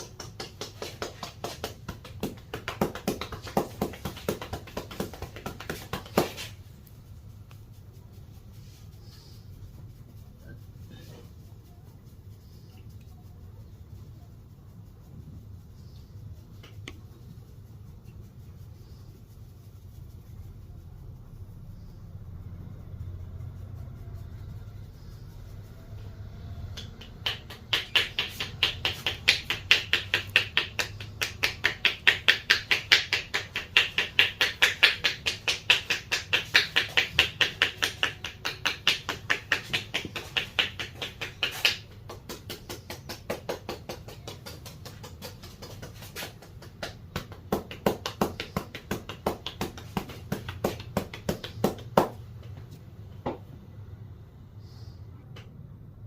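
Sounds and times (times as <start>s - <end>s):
hands slapping and chopping: 0.0s - 6.6s, 26.6s - 52.6s.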